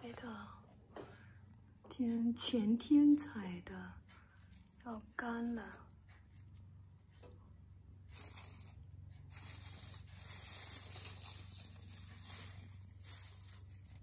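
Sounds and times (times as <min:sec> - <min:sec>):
dried flowers rustling and crackling: 0:04.4 - 0:06.7, 0:08.1 - 0:14.0.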